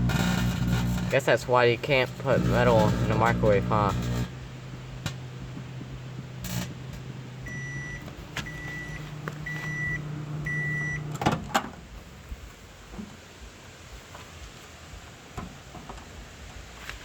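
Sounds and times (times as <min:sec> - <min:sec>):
microwave oven humming: 0:00.0 - 0:01.2, 0:02.0 - 0:11.3
short high beeps: 0:07.5 - 0:11.1.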